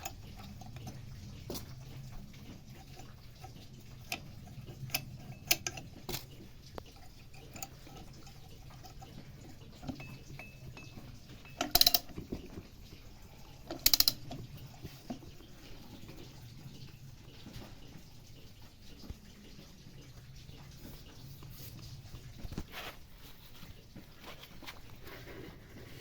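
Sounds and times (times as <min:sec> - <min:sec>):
rapid ratcheting clicks: 0:00.0 - 0:12.5, 0:13.6 - 0:14.9
hand tools clicking and knocking: 0:02.8 - 0:12.8, 0:13.6 - 0:15.2.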